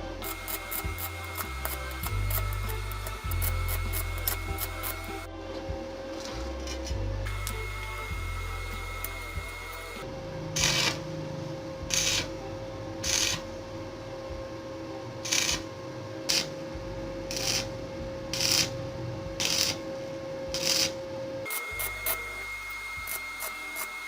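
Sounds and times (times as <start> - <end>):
steady tonal hum: 0.0 - 24.0.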